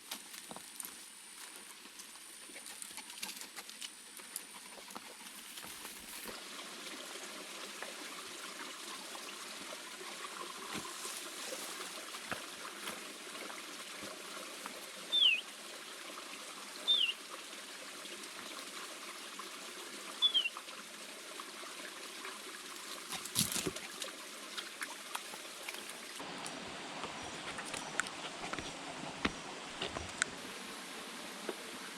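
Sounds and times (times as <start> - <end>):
bird whistling: 15.1 - 15.4, 16.9 - 17.2, 20.2 - 20.5.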